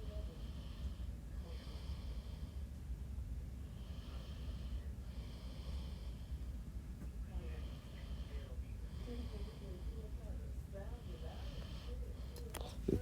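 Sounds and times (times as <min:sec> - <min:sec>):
person breathing: 0:00.3 - 0:02.6, 0:03.7 - 0:06.6.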